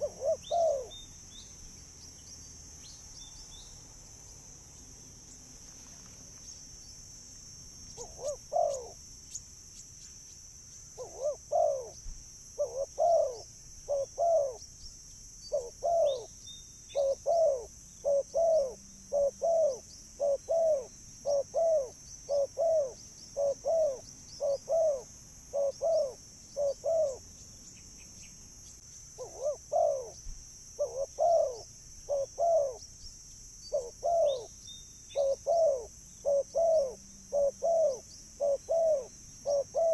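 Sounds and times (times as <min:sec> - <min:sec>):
dove cooing: 0:00.0 - 0:01.0, 0:08.0 - 0:09.0, 0:11.0 - 0:14.6, 0:15.5 - 0:16.3, 0:16.9 - 0:27.2, 0:29.2 - 0:30.2, 0:30.8 - 0:32.8, 0:33.7 - 0:34.5, 0:35.1 - 0:39.9.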